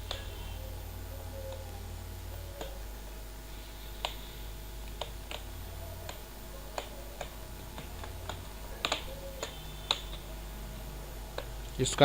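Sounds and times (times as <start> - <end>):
low steady hum: 0.0 - 12.0
light clicks and taps: 3.9 - 10.3.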